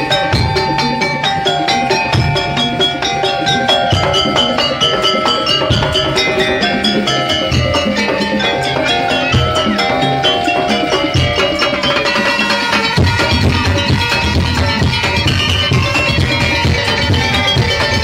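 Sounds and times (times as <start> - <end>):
drums on a quick beat: 0.0 - 18.0
fast ringing struck notes: 0.0 - 18.0.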